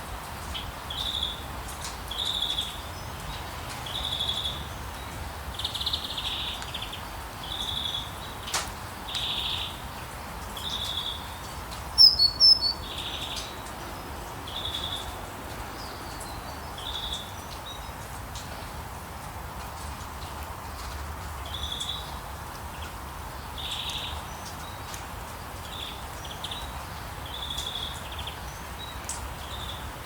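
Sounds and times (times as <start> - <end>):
high bird chirps: 12.0 - 13.3.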